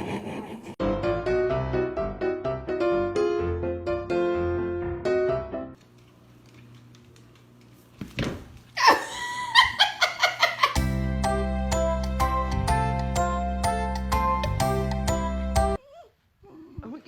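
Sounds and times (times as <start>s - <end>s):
piano music: 0.8s - 5.8s, 10.8s - 15.8s.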